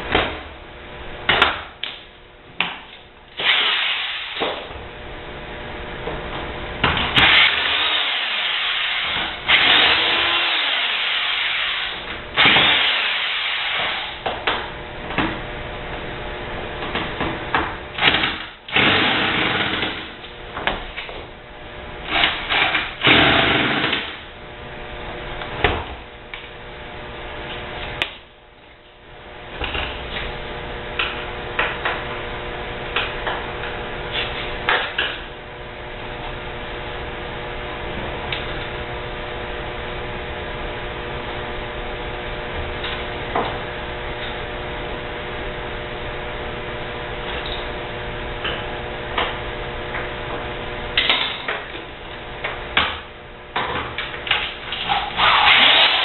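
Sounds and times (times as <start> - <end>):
power drill running: 3.4 - 4.4, 7.2 - 14.2, 18.0 - 20.1, 22.1 - 24.2, 54.7 - 56.0.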